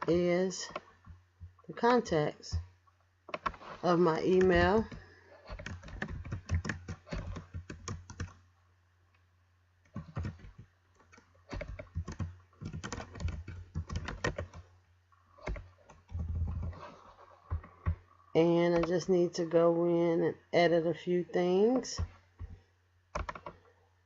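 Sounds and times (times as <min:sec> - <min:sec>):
keyboard typing clicks: 0:04.4 - 0:08.4, 0:11.5 - 0:14.6, 0:23.2 - 0:23.6.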